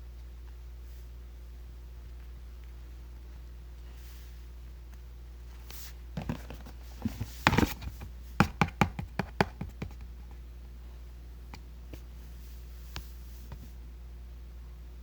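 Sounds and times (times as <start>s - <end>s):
clicks and taps handling a toy: 5.7s - 10.4s.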